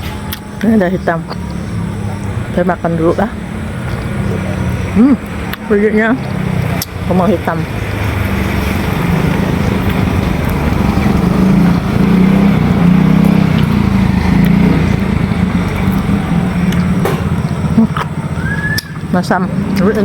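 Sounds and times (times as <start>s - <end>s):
engine running: 0.0s - 20.0s.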